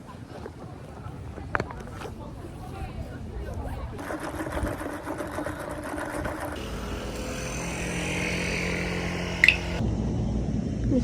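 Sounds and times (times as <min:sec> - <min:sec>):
traffic noise with engine hum: 0:00.0 - 0:09.8
sharp high squeak: 0:06.6 - 0:09.8.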